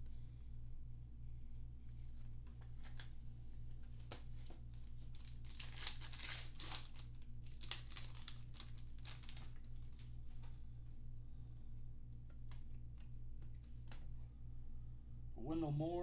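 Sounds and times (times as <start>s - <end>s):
plastic wrapper tearing and crinkling: 2.7s - 3.1s, 4.0s - 10.5s.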